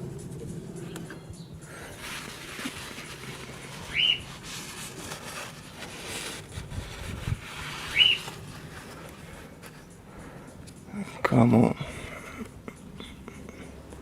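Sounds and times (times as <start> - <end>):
faint background noise: 0.0 - 14.0
short high whistles: 3.9 - 4.3, 7.9 - 8.3.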